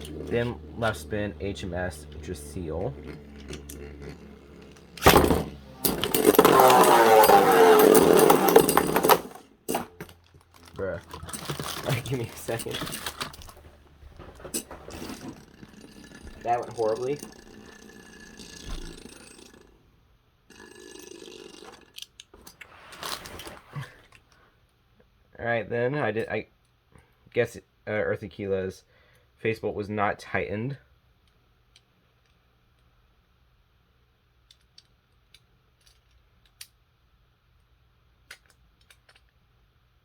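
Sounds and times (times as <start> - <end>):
rustling handling noise: 0.0 - 17.1, 22.4 - 24.4.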